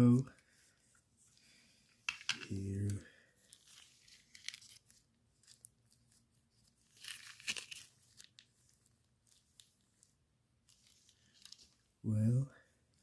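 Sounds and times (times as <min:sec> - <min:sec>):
packaging rustling: 0:03.4 - 0:10.1
crinkly burst of packaging: 0:06.9 - 0:08.1.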